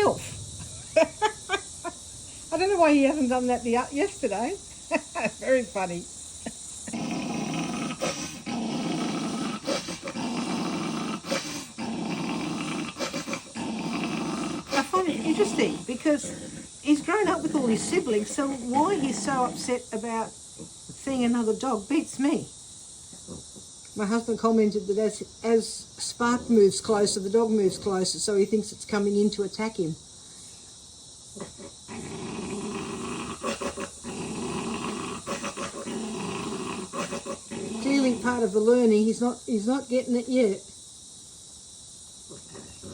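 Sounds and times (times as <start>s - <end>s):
puppy growling: 0.0s - 20.0s, 31.4s - 38.7s, 42.3s - 42.9s.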